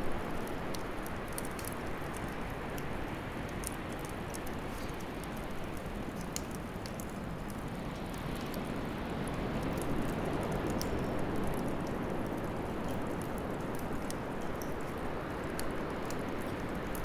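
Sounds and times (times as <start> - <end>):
fire crackles and pops: 0.0 - 17.0.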